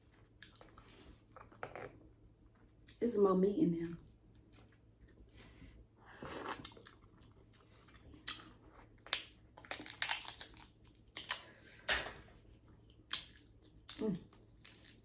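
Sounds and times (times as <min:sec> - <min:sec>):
chewing: 0:06.2 - 0:11.7
crab shell cracking: 0:08.3 - 0:11.5, 0:13.1 - 0:15.0.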